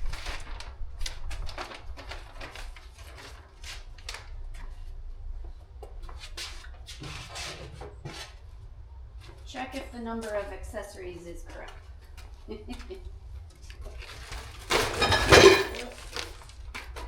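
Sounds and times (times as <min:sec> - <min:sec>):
parts clicking and rustling: 0:14.3 - 0:16.3.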